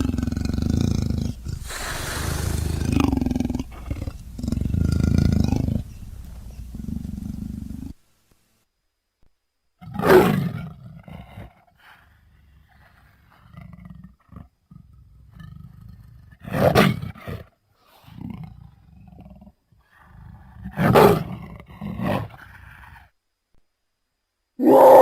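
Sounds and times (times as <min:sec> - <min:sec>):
big cat growling: 0:00.0 - 0:08.0
big cat roaring: 0:00.0 - 0:08.0.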